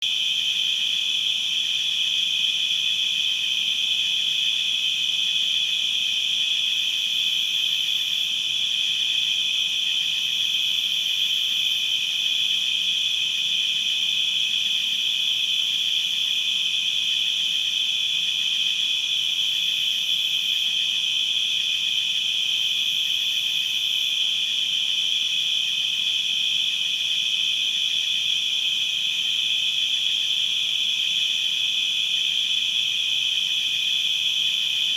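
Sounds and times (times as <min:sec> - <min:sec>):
crickets chirping: 0:00.0 - 0:34.9.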